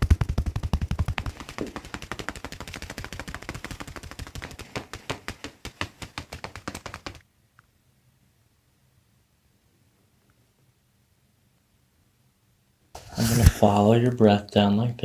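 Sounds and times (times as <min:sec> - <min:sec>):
rapid percussive massage strikes: 0:00.0 - 0:07.2.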